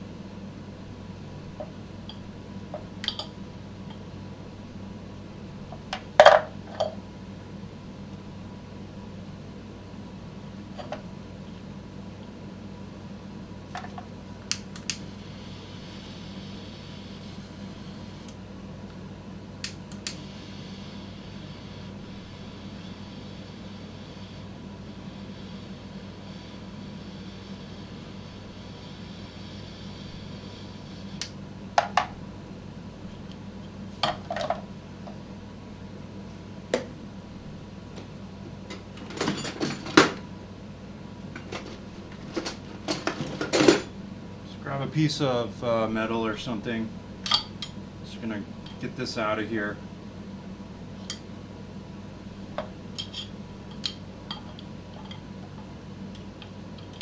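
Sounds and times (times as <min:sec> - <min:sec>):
steady low hum: 0:00.0 - 0:57.0
faint hiss: 0:15.0 - 0:18.3.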